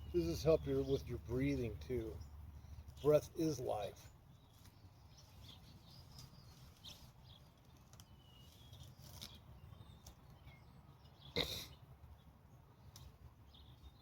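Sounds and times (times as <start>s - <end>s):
low steady rumble: 0.0s - 8.0s
distant birds chirping: 0.0s - 14.0s.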